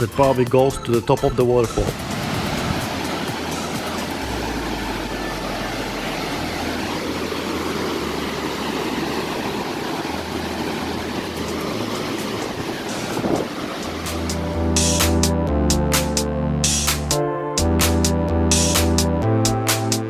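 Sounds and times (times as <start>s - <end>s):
waterfall roaring: 1.9s - 16.2s
low hum shifting in pitch: 1.9s - 19.6s.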